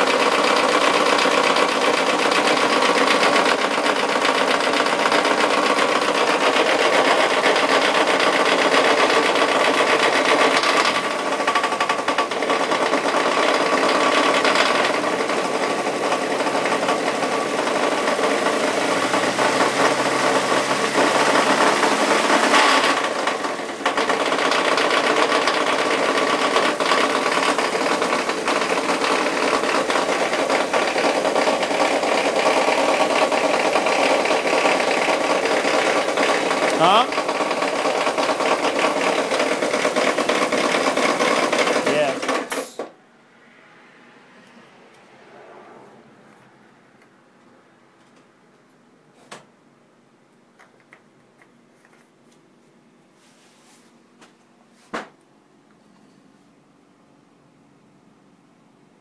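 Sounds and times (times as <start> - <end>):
engine running with hard knock: 0.0 - 43.0.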